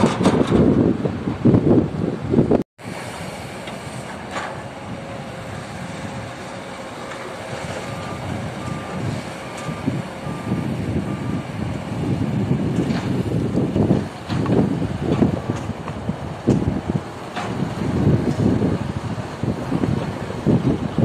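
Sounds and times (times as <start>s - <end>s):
heavy machinery engine: 0.0s - 21.0s
reversing alarm beeps: 6.8s - 11.7s.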